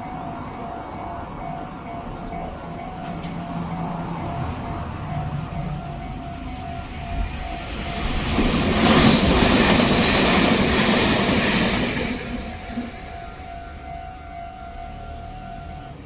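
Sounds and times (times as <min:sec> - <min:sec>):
level crossing warning bell: 0:00.0 - 0:08.6, 0:12.4 - 0:16.0
train wheels rumbling on rails: 0:00.0 - 0:16.0.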